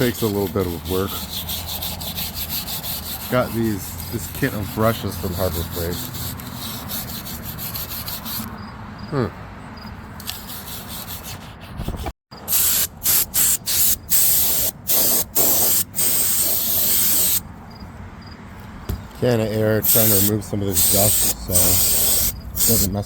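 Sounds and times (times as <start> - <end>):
brush scrubbing metal: 0.0 - 8.5, 19.8 - 23.0
compressed air hissing blasts: 12.5 - 17.4, 19.8 - 23.0.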